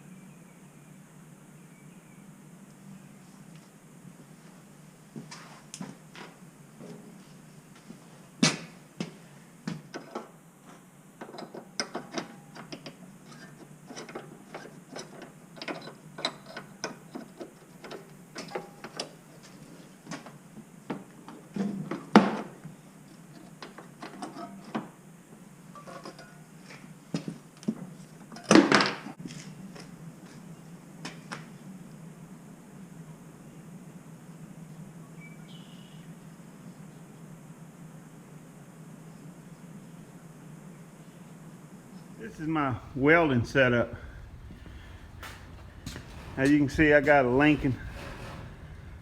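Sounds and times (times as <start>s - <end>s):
clicks and clatters of metal tools: 25.8s - 26.4s
loud knocks: 42.7s - 49.0s.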